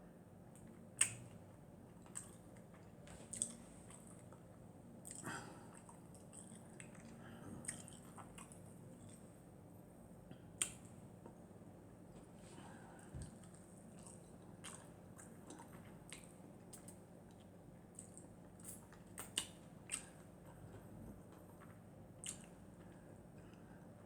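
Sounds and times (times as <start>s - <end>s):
person chewing: 13.2s - 16.9s
mouth clicks and lip smacks: 22.2s - 22.6s.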